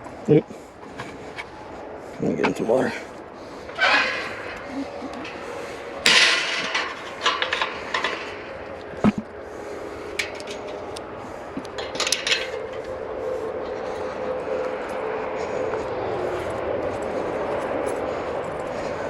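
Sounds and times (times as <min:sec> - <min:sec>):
objects clattering: 0:03.6 - 0:09.3, 0:11.6 - 0:13.0.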